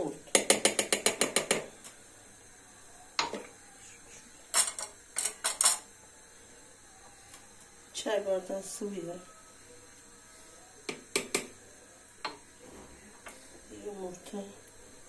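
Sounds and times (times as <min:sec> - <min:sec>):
utensil knock: 0:00.3 - 0:01.7, 0:10.9 - 0:11.6.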